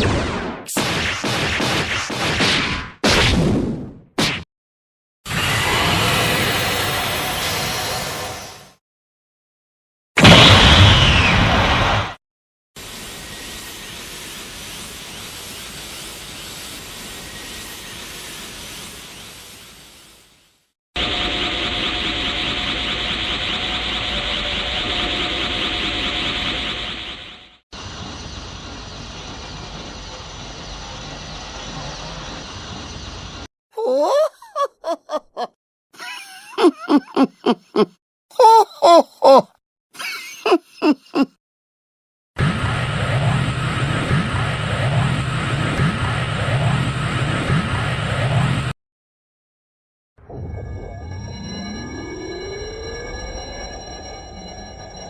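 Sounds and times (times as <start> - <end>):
person grunting and shouting: 33.8 - 34.9, 36.6 - 39.5.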